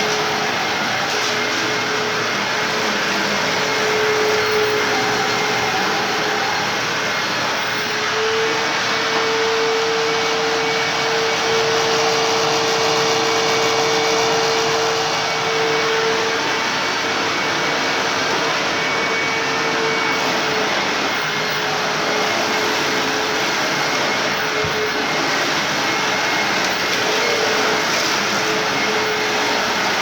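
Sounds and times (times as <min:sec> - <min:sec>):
vacuum cleaner running: 0:00.0 - 0:30.0.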